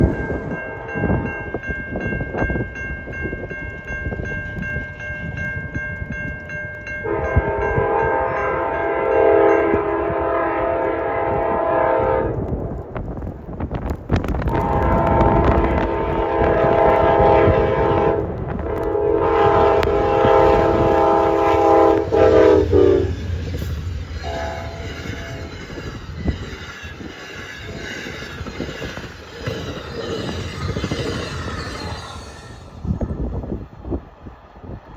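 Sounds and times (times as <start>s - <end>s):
train rumbling along rails: 0.0s - 34.9s
train air horn: 7.0s - 12.4s, 14.5s - 33.0s.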